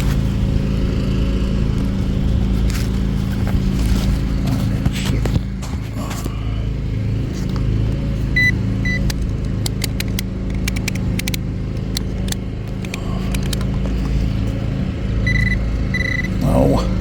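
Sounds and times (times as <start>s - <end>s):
steady low hum: 0.0s - 17.0s
digging clicks and scrapes: 1.7s - 6.5s, 7.3s - 14.8s
metal detector beeps: 8.4s - 9.1s, 15.2s - 16.4s.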